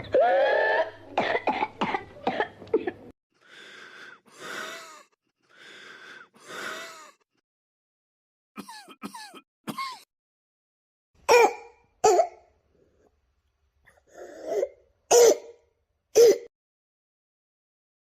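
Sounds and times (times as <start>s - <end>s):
person coughing: 0.8s - 3.1s, 8.6s - 10.1s, 11.3s - 12.4s, 15.1s - 15.5s, 16.2s - 16.5s.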